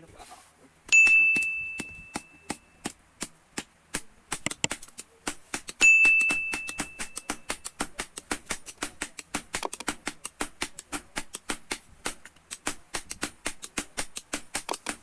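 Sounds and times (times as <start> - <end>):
anvil ringing: 0.9 - 2.8, 5.3 - 9.2
hammer tapping steel on anvil: 0.9 - 15.0.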